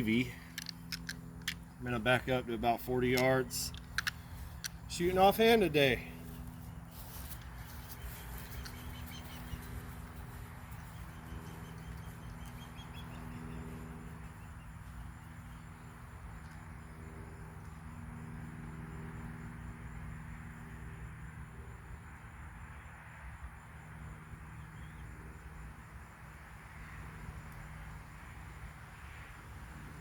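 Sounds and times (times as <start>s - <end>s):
steady low hum: 0.0s - 22.0s
faint chirping call: 6.7s - 15.6s.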